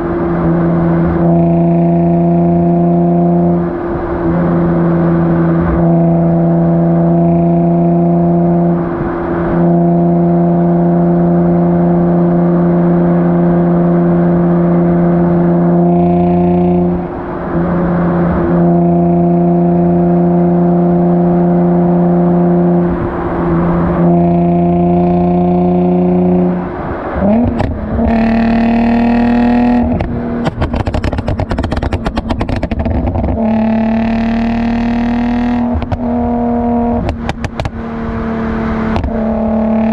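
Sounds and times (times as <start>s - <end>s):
car exhaust drone: 0.0s - 39.9s
exhaust crackles and pops: 27.3s - 37.8s, 38.9s - 39.9s.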